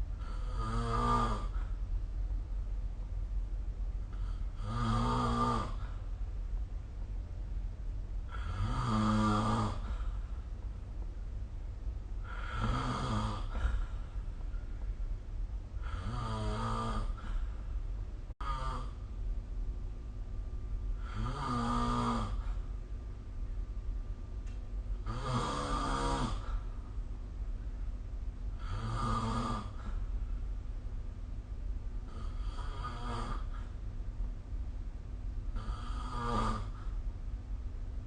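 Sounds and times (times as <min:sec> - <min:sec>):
steady low background hum: 0:00.0 - 0:38.0
person snoring: 0:00.2 - 0:01.7, 0:04.1 - 0:06.0, 0:08.3 - 0:10.2, 0:12.2 - 0:13.9, 0:15.8 - 0:17.5, 0:18.4 - 0:19.0, 0:21.0 - 0:22.6, 0:25.0 - 0:26.7, 0:28.6 - 0:30.0, 0:32.1 - 0:33.8, 0:35.6 - 0:37.0.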